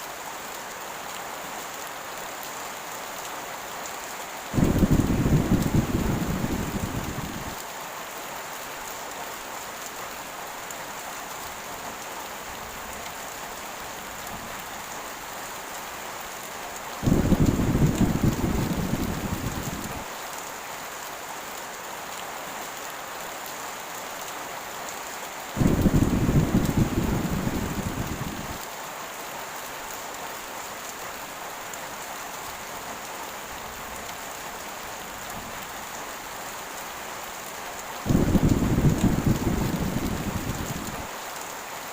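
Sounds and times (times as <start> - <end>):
heavy rain: 0.0 - 41.9
low thunder rumbling: 4.6 - 7.6, 17.0 - 20.1, 25.6 - 28.6, 38.1 - 41.1.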